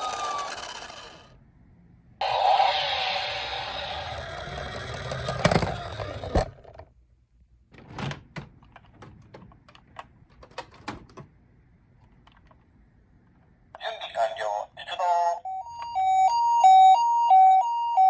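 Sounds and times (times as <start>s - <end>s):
toy cars clicking and tapping: 0.0s - 1.3s, 4.0s - 6.4s.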